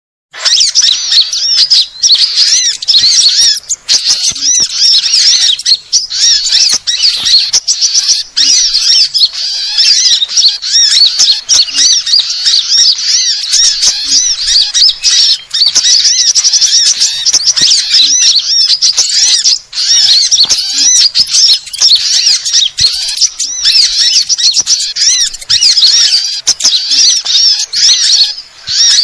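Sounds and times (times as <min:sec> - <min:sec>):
songbirds chirping: 0:00.4 - 0:29.0.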